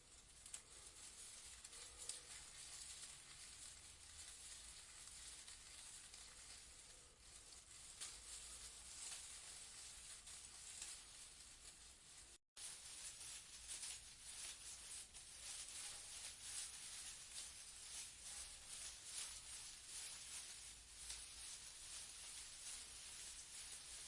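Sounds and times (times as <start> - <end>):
leaves rustling in a breeze: 0.0 - 24.0.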